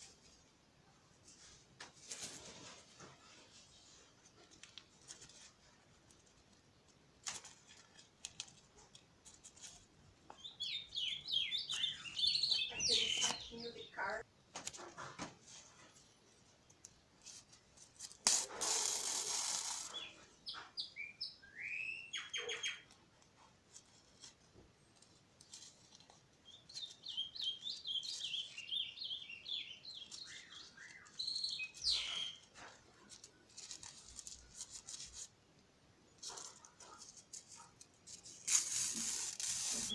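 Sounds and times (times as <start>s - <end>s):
small bird chirping: 9.6s - 14.2s, 18.7s - 23.0s, 25.6s - 35.0s, 36.2s - 39.9s.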